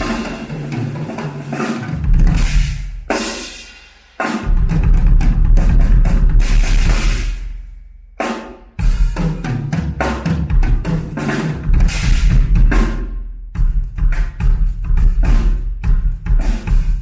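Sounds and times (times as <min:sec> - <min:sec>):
cymbal crashes: 0:00.0 - 0:00.8
drum kit played hard: 0:00.0 - 0:17.0.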